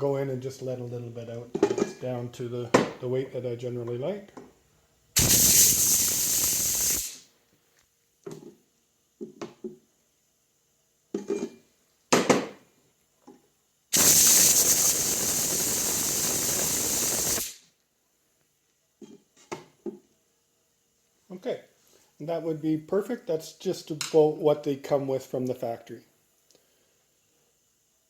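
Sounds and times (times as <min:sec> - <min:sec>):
gas hissing out of cylinder: 0:05.2 - 0:07.3, 0:13.9 - 0:17.7.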